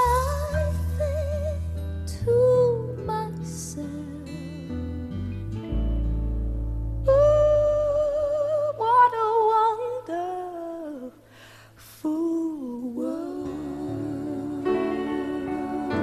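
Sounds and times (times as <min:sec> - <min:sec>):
soft musical accompaniment: 0:00.0 - 0:16.0
person humming a melody: 0:12.1 - 0:16.0.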